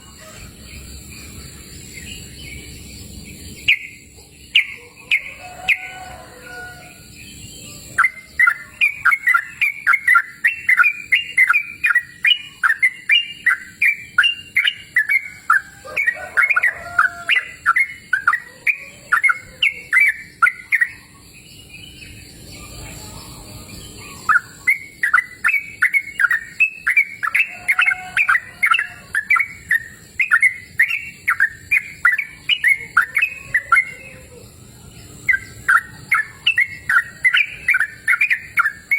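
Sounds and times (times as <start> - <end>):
bird singing chattering notes: 0.0 - 6.0, 7.2 - 38.9.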